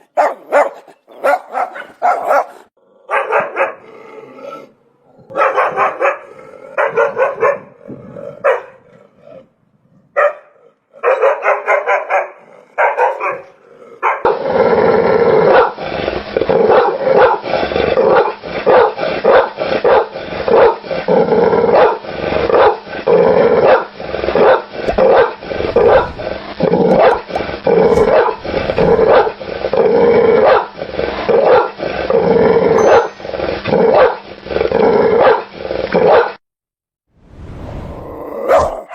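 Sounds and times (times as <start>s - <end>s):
dog barking: 0.0s - 3.9s, 5.3s - 7.8s, 8.4s - 8.9s, 10.1s - 14.4s, 18.1s - 20.8s, 23.6s - 29.4s, 30.4s - 30.7s, 35.2s - 36.4s, 38.4s - 38.9s.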